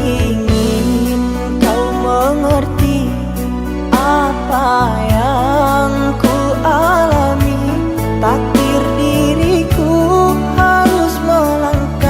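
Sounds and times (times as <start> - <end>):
low bass notes: 0.0 - 12.0
song with gliding melody: 0.0 - 12.0.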